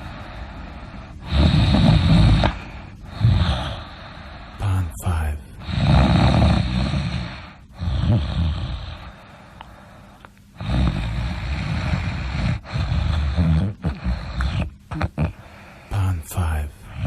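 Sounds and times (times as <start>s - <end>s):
person snoring loudly: 1.2s - 4.0s, 5.6s - 9.2s, 10.6s - 15.5s.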